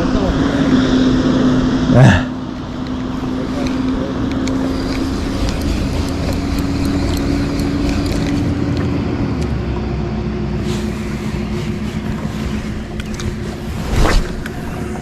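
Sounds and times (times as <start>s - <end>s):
boat motor humming: 0.0s - 15.0s
wind: 0.0s - 15.0s
water hissing: 3.2s - 8.7s, 10.6s - 15.0s.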